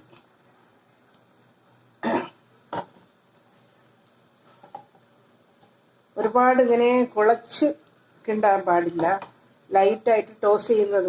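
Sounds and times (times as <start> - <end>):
person coughing: 2.0 - 2.4.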